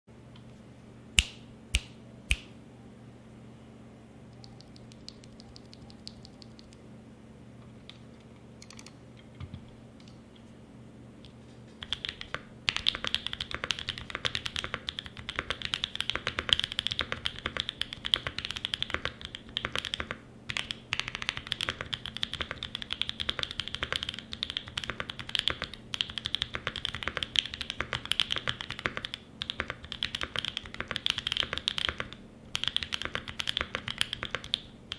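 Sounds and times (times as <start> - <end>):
mechanical keyboard typing: 4.4 - 6.8, 8.6 - 9.0, 11.8 - 34.9.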